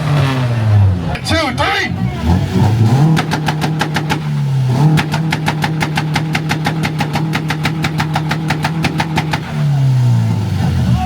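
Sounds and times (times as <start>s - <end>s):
car engine on rev limiter: 0.0s - 11.0s
exhaust cracks and pops: 3.1s - 9.7s.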